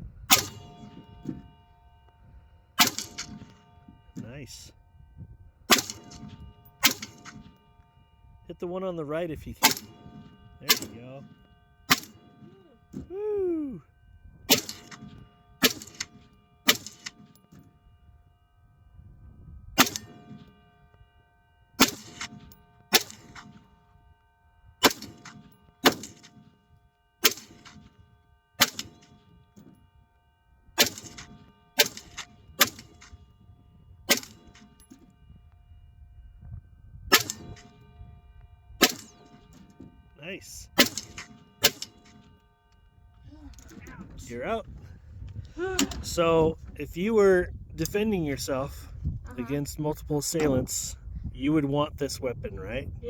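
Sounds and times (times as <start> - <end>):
rifle shots: 0.3 - 1.0, 2.8 - 3.6, 5.7 - 7.5, 9.6 - 11.3, 11.9 - 12.5, 14.5 - 17.4, 19.8 - 20.5, 21.8 - 23.6, 24.8 - 26.5, 27.2 - 28.0, 28.6 - 29.3, 30.8 - 33.2, 34.1 - 34.8, 37.1 - 37.8, 38.8 - 39.6, 40.8 - 42.3
steel targets ringing: 0.3 - 13.2, 14.0 - 18.5, 19.8 - 24.2, 24.8 - 35.4, 37.1 - 44.7.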